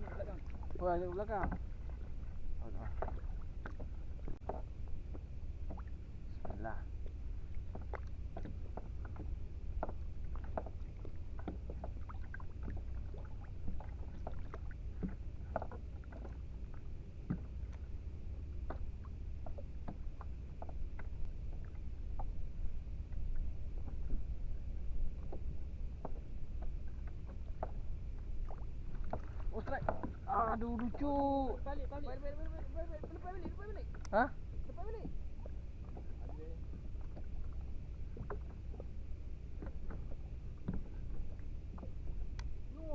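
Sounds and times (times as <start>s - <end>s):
steady low rumble: 0.0s - 42.9s
water splashing against kayak hull: 0.0s - 42.9s.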